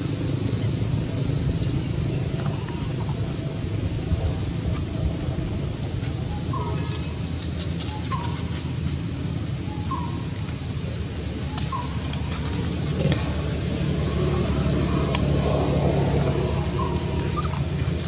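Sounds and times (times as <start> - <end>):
low rumble: 11.1 - 18.0
bird calling: 11.5 - 18.0.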